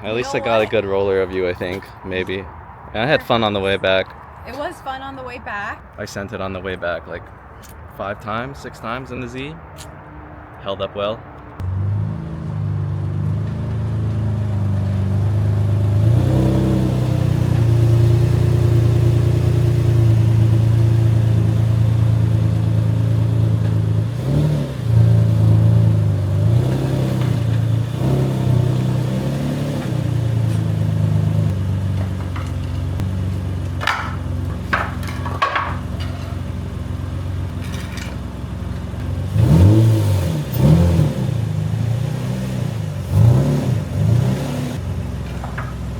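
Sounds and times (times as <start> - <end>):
car engine running: 11.6 - 45.9.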